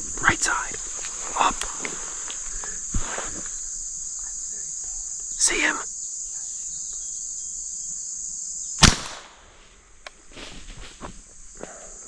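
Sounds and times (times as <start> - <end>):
faint ticks and rustles: 0.0 - 7.2
crickets chirping: 0.0 - 12.0
rifle shot: 8.8 - 9.6.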